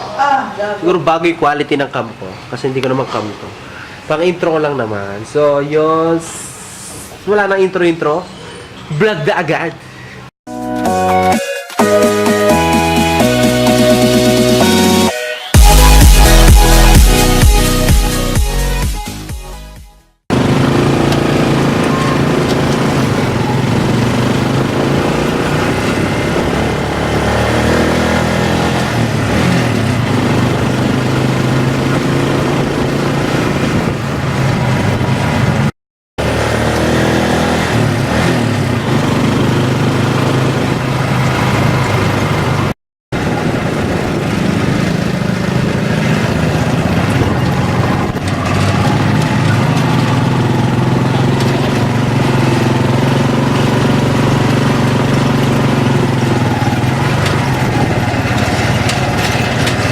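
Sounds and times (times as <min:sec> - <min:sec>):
road and wind noise: 0:20.3 - 0:59.9
vehicle engine hum: 0:20.3 - 0:59.9.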